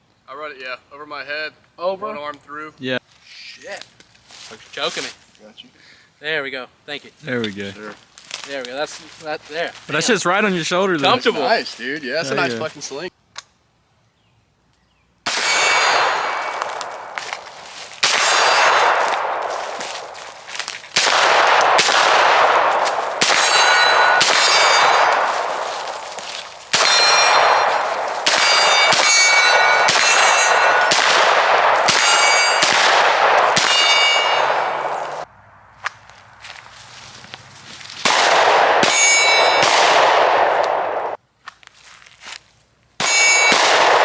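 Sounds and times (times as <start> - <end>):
gunshots: 15.3 - 35.2, 38.0 - 41.2, 43.0 - 44.0
steel plate ringing clang: 15.3 - 35.2, 38.8 - 39.8, 43.0 - 43.7.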